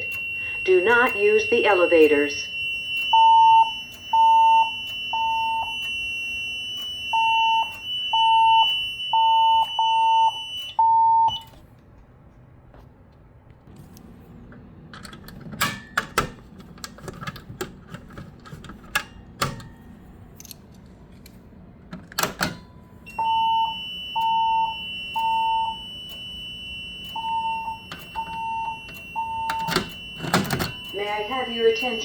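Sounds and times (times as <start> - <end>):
alarm beeps: 0.0 - 11.6, 23.0 - 32.0.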